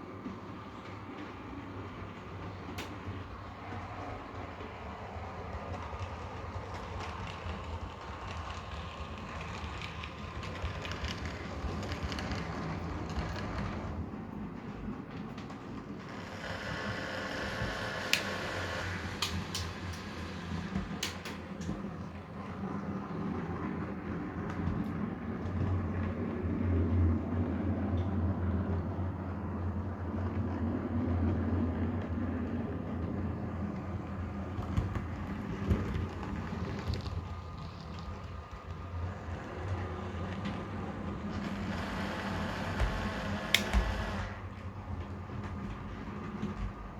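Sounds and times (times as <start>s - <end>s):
sharp clicks: 18.1s - 18.4s, 21.0s - 21.7s, 43.5s - 44.2s.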